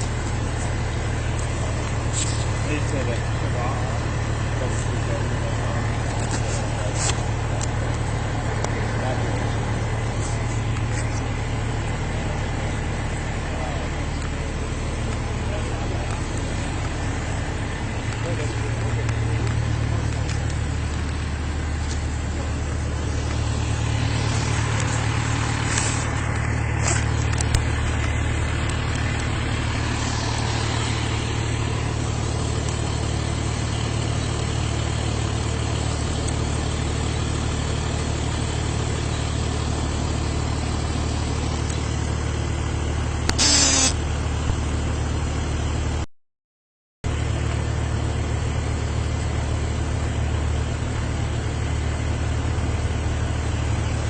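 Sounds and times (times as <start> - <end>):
car engine idling: 0.0 - 46.0
short sharp noise: 43.3 - 44.0.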